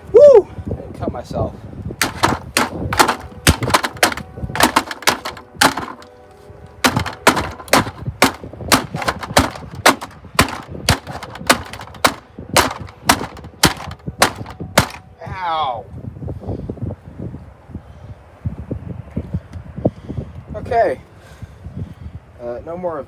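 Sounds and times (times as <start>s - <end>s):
hard blows on plastic vacuum cleaner: 2.0s - 6.1s, 6.8s - 15.0s.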